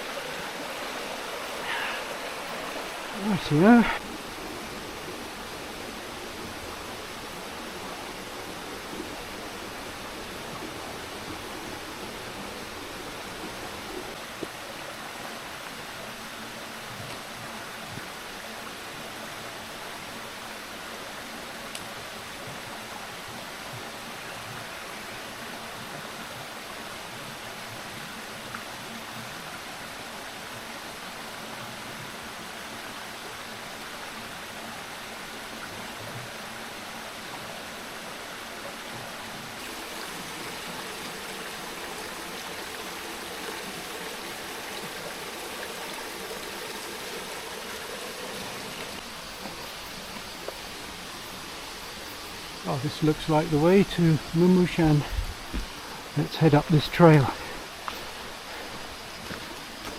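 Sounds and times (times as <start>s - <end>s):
stream rushing over rocks: 0.0s - 59.9s.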